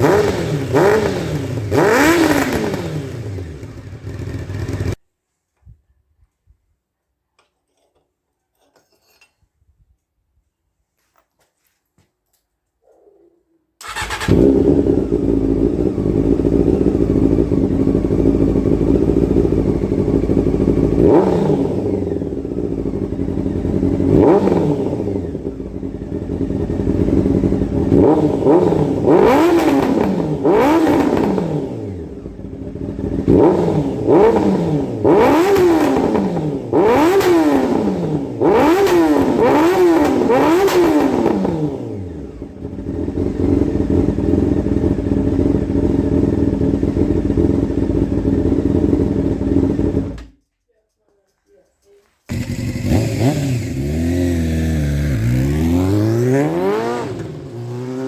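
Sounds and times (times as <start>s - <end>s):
motorcycle engine throttle blips: 13.8s - 50.4s, 51.9s - 58.0s.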